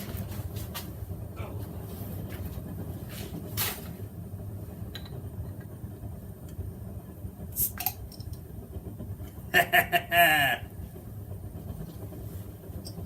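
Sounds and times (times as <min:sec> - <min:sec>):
steady low hum: 0:00.0 - 0:13.0
bottle cap hiss: 0:07.6 - 0:08.0.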